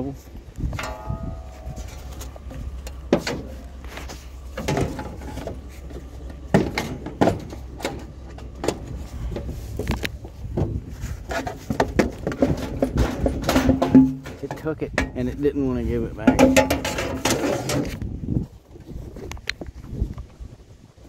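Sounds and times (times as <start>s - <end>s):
low steady hum: 0.0s - 20.2s
objects knocking and clattering: 0.7s - 15.2s, 16.2s - 18.0s.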